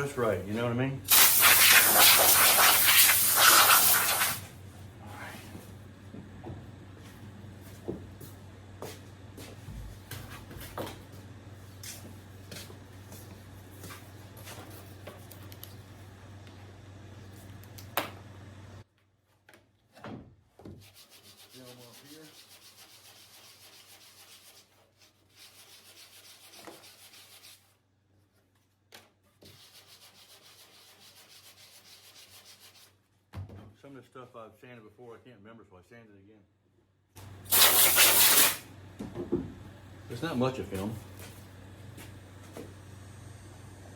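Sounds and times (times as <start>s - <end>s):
sandpaper rubbing on wood: 1.1s - 4.4s, 20.8s - 27.7s, 29.4s - 32.9s.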